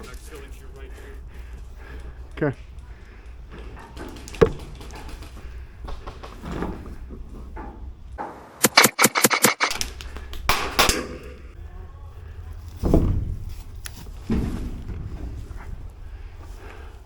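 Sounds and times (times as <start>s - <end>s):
airsoft rifle shots: 10.5s - 11.3s.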